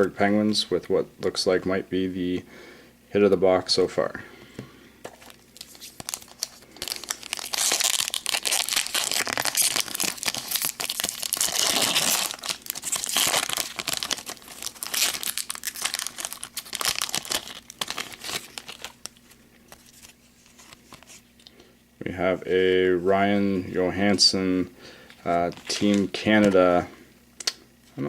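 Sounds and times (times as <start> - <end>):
foil wrapper crinkling and tearing: 5.1 - 21.5, 25.0 - 26.6.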